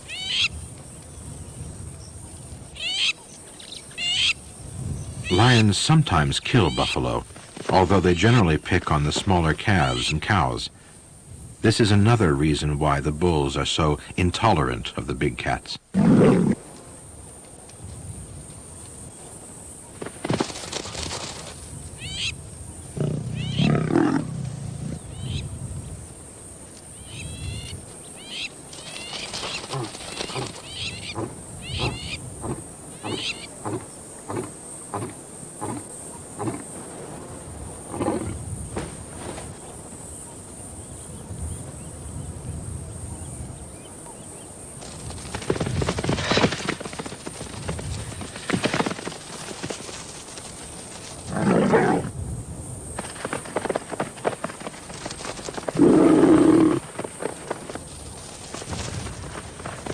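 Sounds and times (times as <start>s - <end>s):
lions growling: 23.0s - 25.1s, 51.3s - 52.1s, 55.8s - 56.8s.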